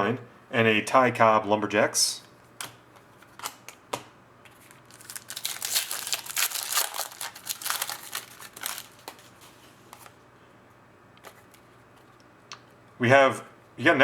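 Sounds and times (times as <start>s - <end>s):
foil wrapper crinkling and tearing: 4.6s - 10.1s.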